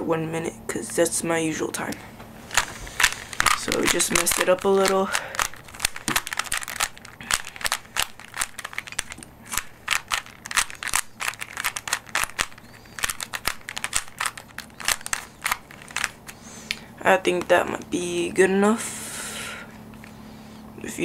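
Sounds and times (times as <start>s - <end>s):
puzzle cube plastic clicks: 1.8s - 17.9s.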